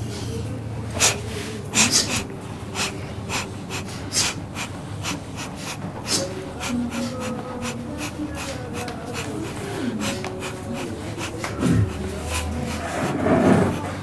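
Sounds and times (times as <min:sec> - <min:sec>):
short sharp puffs of breath: 0:01.0 - 0:12.9.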